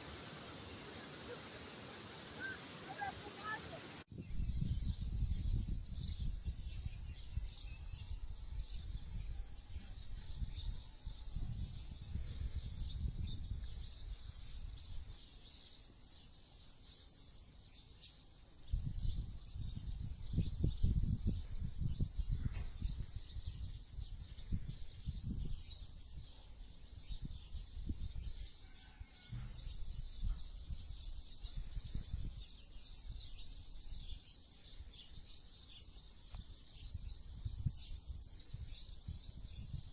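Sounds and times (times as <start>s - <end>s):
birds chirping: 0.0s - 39.9s
low gusty rumble: 4.1s - 15.2s.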